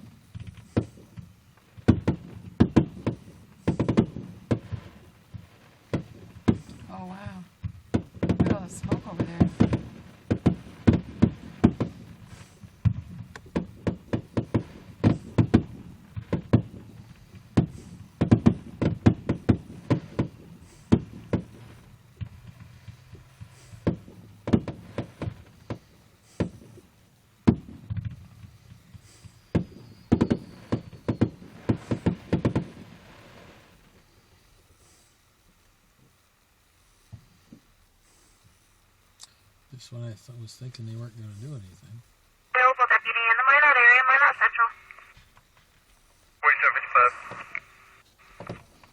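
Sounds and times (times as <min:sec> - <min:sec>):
fireworks bangs: 0:00.0 - 0:35.1, 0:46.4 - 0:48.9.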